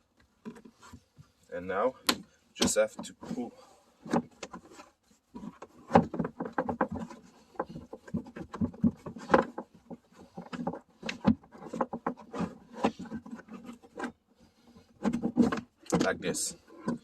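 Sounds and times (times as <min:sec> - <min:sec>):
trim panel clicking and rubbing: 0:04.0 - 0:14.2.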